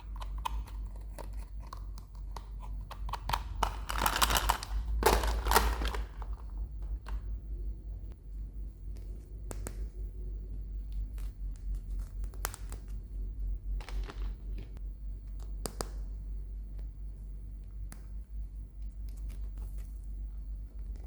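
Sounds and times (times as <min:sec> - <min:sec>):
steady low hum: 0:00.0 - 0:21.0
plastic packaging crinkling: 0:03.1 - 0:07.2, 0:13.7 - 0:14.8.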